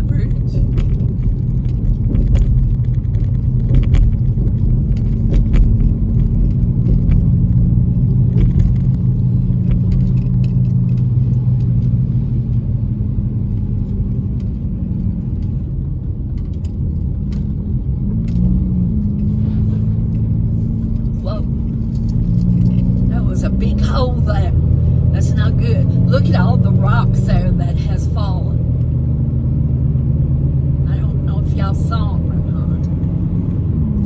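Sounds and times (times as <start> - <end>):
car engine and road hum: 0.0 - 34.0.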